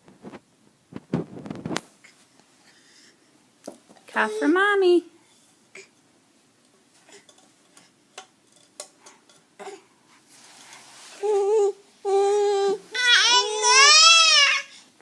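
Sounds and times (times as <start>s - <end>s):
baby fussing cries: 11.3s - 14.8s.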